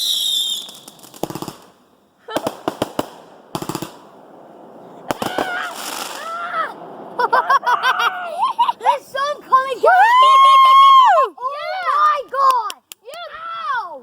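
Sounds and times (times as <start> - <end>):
fireworks popping and crackling: 0.0 - 7.3
excited voices calling out: 5.1 - 14.0.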